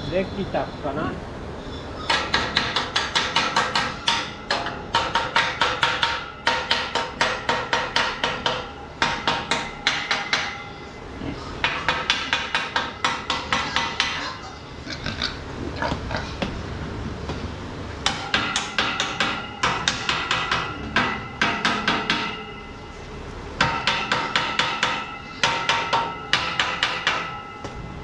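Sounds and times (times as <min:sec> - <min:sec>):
hammer striking steel tubing: 0:02.1 - 0:10.7, 0:18.0 - 0:22.8, 0:23.6 - 0:27.8.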